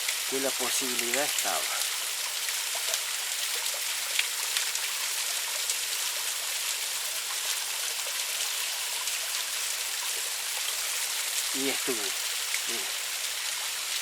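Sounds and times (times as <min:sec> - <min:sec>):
small waterfall rushing: 0:00.0 - 0:14.0.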